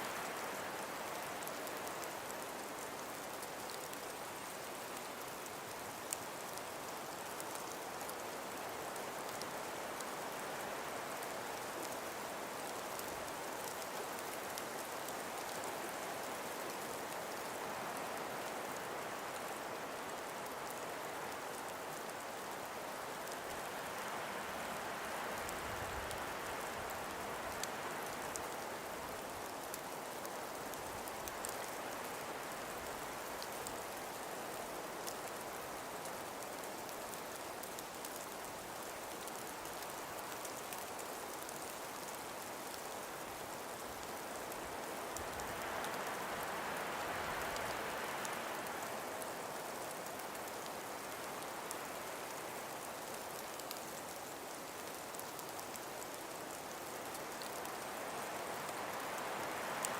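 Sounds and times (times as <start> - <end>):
faint ticks: 0.0 - 22.6, 25.4 - 59.9
breeze through trees: 0.0 - 59.9.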